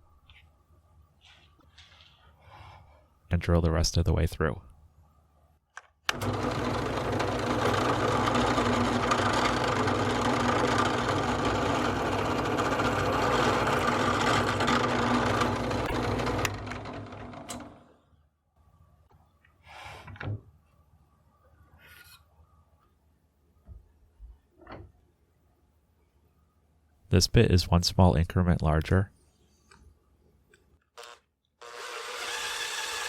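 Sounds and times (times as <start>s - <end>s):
drill press boring wood: 6.1s - 17.9s, 31.0s - 33.0s.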